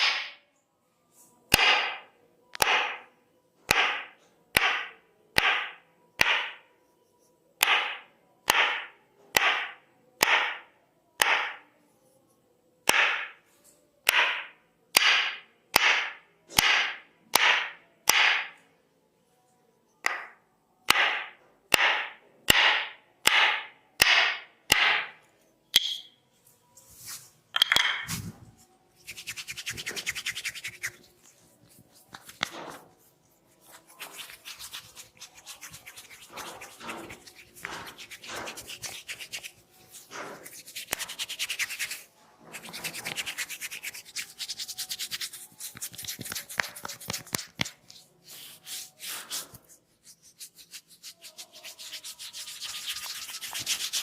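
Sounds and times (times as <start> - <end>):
wooden mallet striking wooden stick: 0.0 - 0.4, 1.5 - 3.1, 3.7 - 6.7, 7.6 - 11.6, 12.8 - 13.4, 14.0 - 18.6, 20.0 - 26.2, 27.5 - 28.3.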